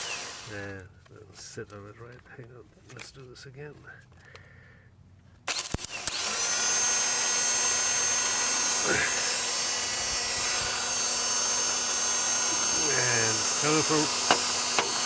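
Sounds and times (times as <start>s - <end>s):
car starter motor whirring: 5.5s - 15.0s.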